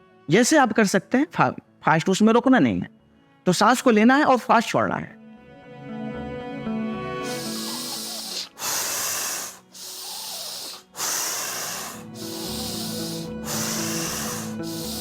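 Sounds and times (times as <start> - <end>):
background music: 0.0 - 15.0
fast forceful breathing: 7.2 - 15.0.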